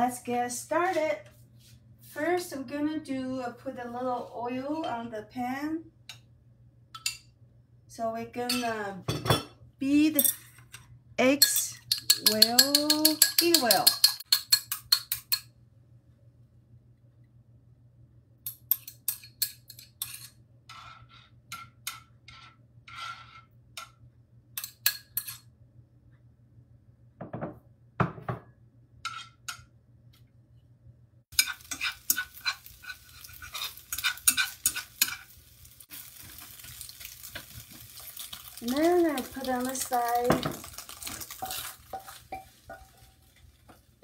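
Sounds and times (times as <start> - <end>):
utensil clinking against bowl: 11.3 - 15.5
stirring clatter in pan: 11.4 - 15.5, 31.3 - 44.0
utensil scraping bowl: 31.3 - 35.4
eggs sizzling in oil: 31.3 - 44.0.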